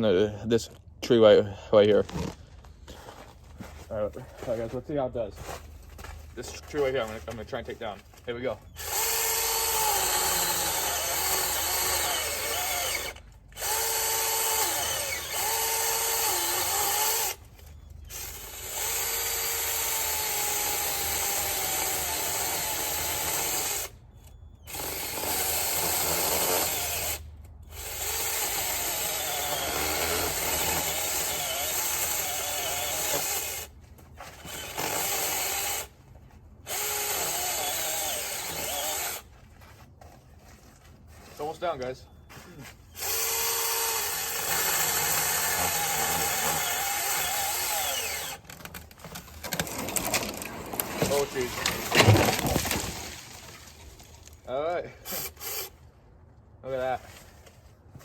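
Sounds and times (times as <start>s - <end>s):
electric chainsaw cutting wood: 8.8s - 17.4s, 18.1s - 23.9s, 24.7s - 33.7s, 34.4s - 35.9s, 36.6s - 39.3s, 43.0s - 54.4s.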